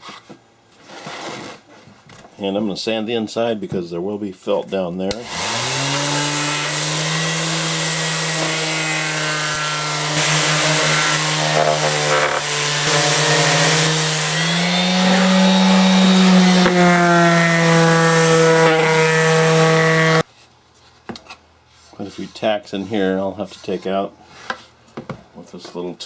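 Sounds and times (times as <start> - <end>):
electric sander sanding wood: 5.1 - 20.3.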